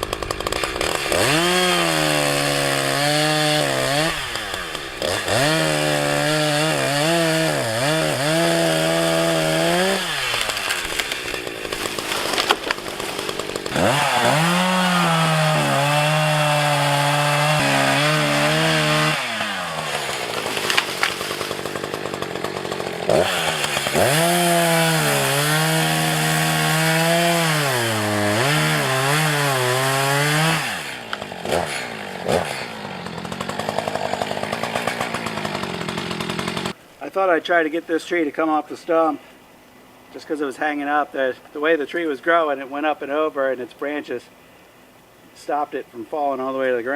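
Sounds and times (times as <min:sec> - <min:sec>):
chainsaw cutting wood: 0:00.0 - 0:36.8.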